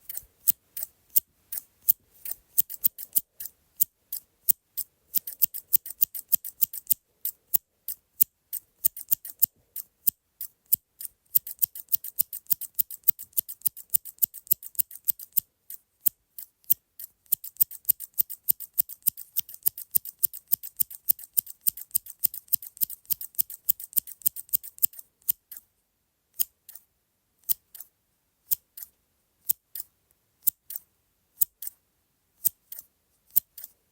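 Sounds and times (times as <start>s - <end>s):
scissors snipping: 0.0s - 3.5s, 32.4s - 33.8s.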